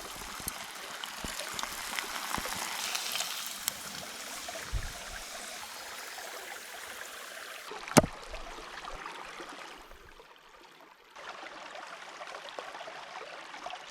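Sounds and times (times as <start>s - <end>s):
steady hiss: 0.0s - 7.7s.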